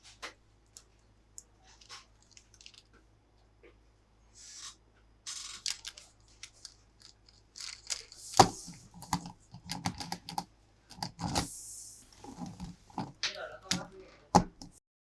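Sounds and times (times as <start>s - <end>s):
packaging rustling: 1.6s - 2.9s, 4.6s - 10.4s.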